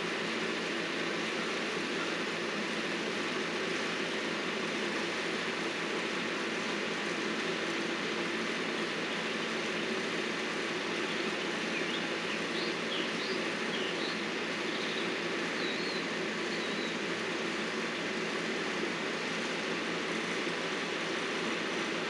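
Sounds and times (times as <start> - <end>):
landscaping equipment running: 0.0 - 22.0
bird chirping: 11.7 - 16.9.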